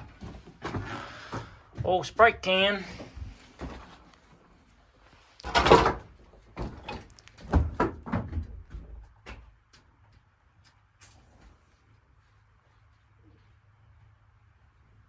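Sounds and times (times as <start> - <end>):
knocks and clatters: 5.4 - 10.2.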